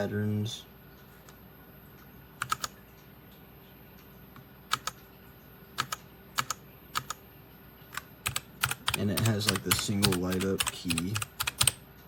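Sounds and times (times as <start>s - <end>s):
mechanical keyboard key presses: 2.4s - 2.7s, 8.0s - 11.8s.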